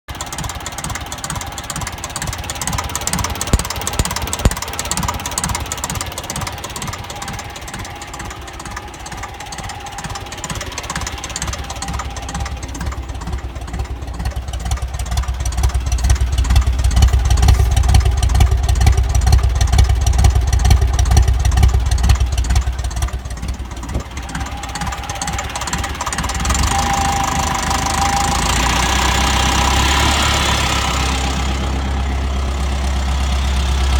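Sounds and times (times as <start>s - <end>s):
tractor diesel engine knocking: 0.0s - 33.9s.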